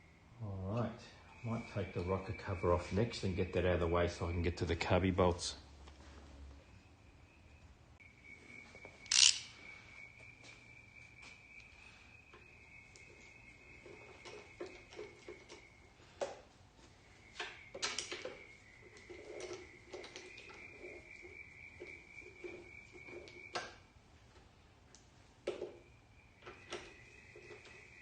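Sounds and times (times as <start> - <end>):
faint high whine: 0.0 - 28.0.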